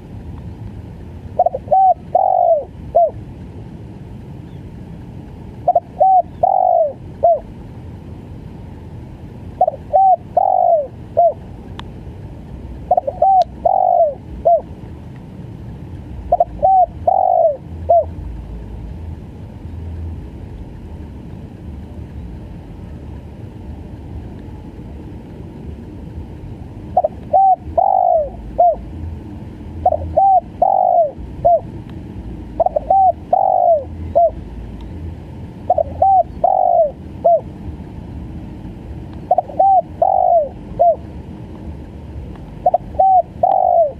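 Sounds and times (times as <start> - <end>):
dove cooing: 1.3 - 3.2, 5.6 - 7.5, 9.6 - 11.5, 12.8 - 14.7, 16.2 - 18.2, 26.9 - 28.9, 29.8 - 31.8, 32.5 - 34.5, 35.6 - 37.5, 39.3 - 41.2, 42.6 - 43.9.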